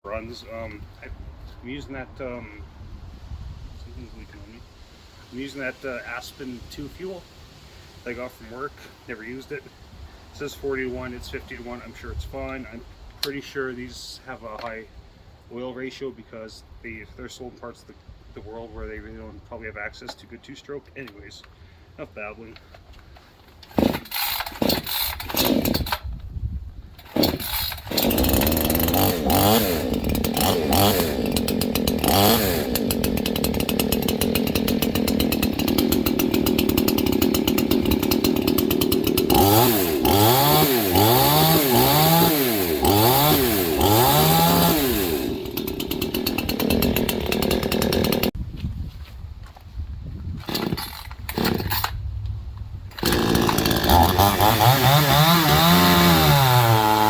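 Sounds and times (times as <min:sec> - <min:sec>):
chainsaw sputtering and revving: 0:23.7 - 0:26.0, 0:27.0 - 0:48.3, 0:50.4 - 0:51.9, 0:52.9 - 0:57.0.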